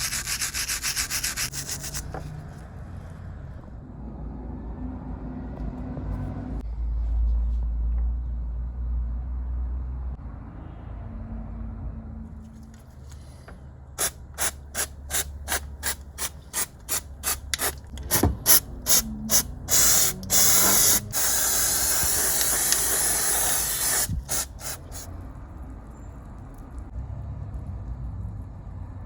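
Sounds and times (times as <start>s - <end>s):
pressurised spray hissing: 14.0s - 25.1s.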